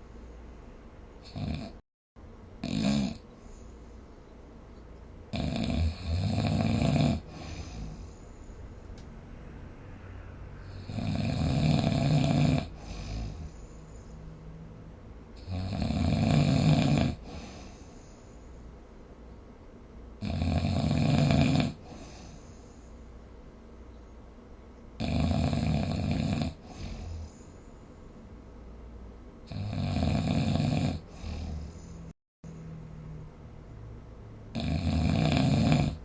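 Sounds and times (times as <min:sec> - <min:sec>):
person snoring: 0:01.2 - 0:01.8, 0:02.6 - 0:03.2, 0:05.3 - 0:08.2, 0:10.0 - 0:13.8, 0:15.4 - 0:18.0, 0:20.2 - 0:22.4, 0:25.0 - 0:27.4, 0:29.5 - 0:32.1, 0:34.5 - 0:36.0
soft breath: 0:07.3 - 0:10.9, 0:12.7 - 0:14.7, 0:17.2 - 0:18.8, 0:21.8 - 0:23.2, 0:31.0 - 0:32.8.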